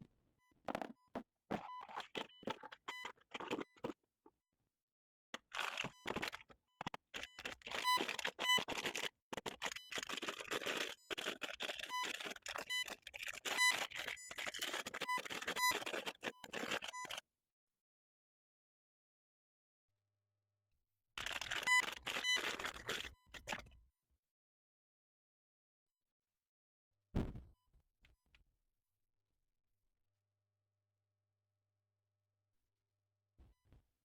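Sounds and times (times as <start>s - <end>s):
packaging scrapes squeaks and clicks: 0.7s - 4.0s, 5.4s - 17.2s, 21.2s - 23.8s.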